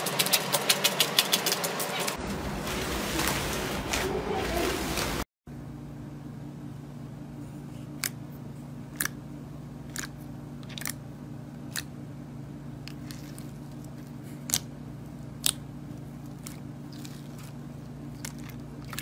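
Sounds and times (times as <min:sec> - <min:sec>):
steady low hum: 0:00.0 - 0:19.0
brittle material crunching: 0:15.3 - 0:19.0.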